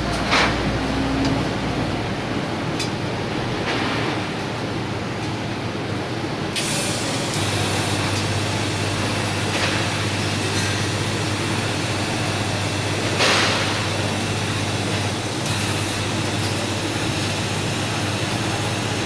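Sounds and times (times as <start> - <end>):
welding hiss: 6.6 - 19.0.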